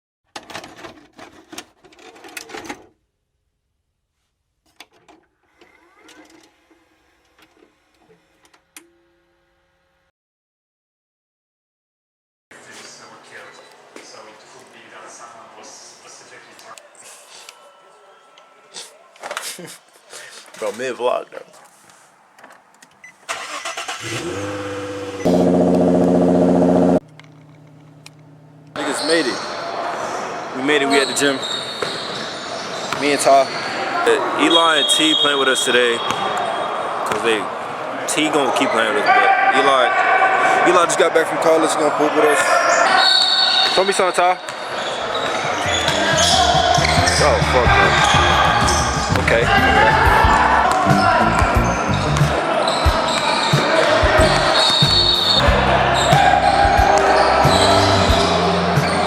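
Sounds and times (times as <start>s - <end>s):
car engine running: 24.0s - 28.8s.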